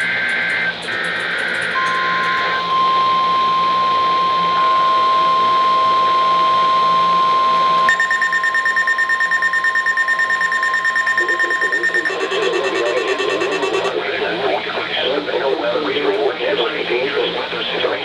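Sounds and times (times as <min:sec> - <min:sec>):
steady warning alarm tone: 0:00.0 - 0:14.0
rapid alert beeping: 0:07.9 - 0:13.9
digital header tones: 0:07.9 - 0:14.0.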